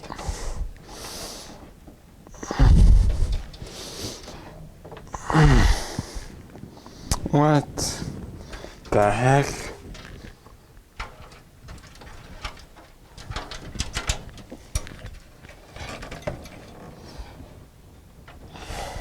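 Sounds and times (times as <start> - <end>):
computer case parts clicking and rattling: 8.1 - 18.5.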